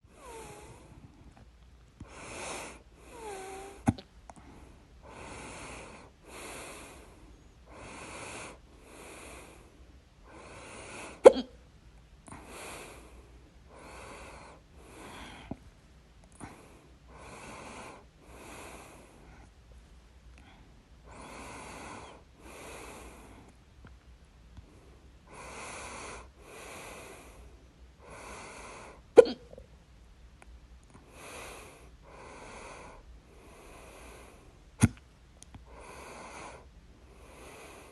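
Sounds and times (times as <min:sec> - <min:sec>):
noisy breathing: 0:00.0 - 0:11.3, 0:12.3 - 0:15.7, 0:16.4 - 0:19.6, 0:20.3 - 0:23.7, 0:24.6 - 0:29.2, 0:31.0 - 0:34.9, 0:35.6 - 0:37.9
person hiccupping: 0:11.2 - 0:11.6, 0:29.2 - 0:29.6.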